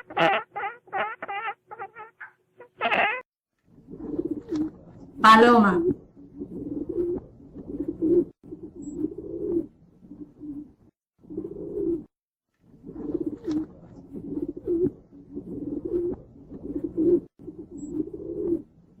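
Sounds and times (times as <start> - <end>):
pigeon cooing: 3.8 - 4.8, 5.4 - 12.1, 12.8 - 18.7.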